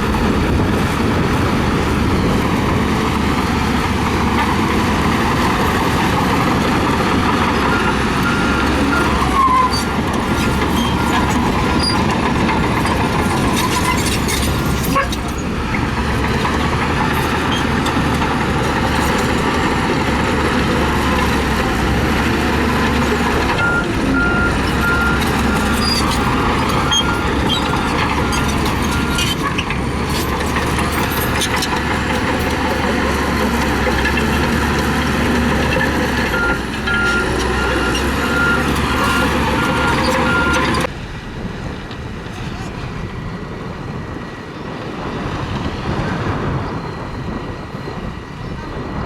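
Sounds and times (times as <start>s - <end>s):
heavy machinery engine rumble: 0.0s - 49.0s
reversing alarm beeping: 23.3s - 29.2s, 36.2s - 40.9s.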